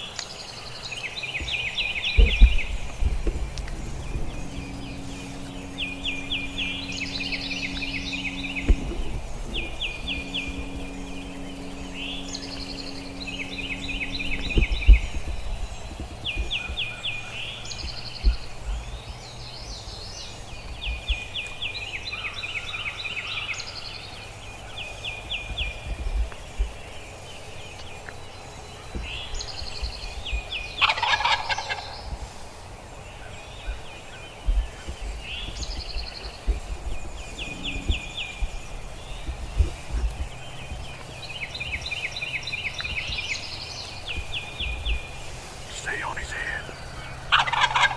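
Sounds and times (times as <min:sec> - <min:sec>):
songbirds singing trills: 0:00.0 - 0:47.9
turkey gobbling: 0:30.8 - 0:31.9, 0:47.1 - 0:47.9.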